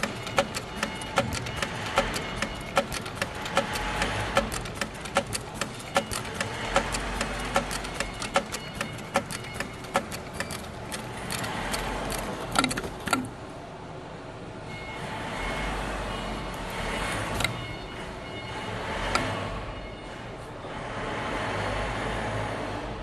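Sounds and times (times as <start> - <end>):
sewing machine clacking: 0.0 - 13.3
sewing machine hum: 0.0 - 13.3.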